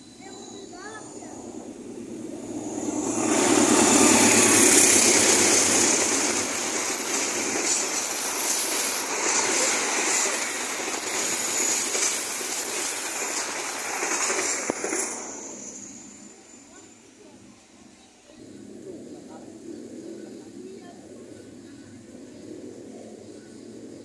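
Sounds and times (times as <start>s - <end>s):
train passing at speed: 0.0s - 24.0s.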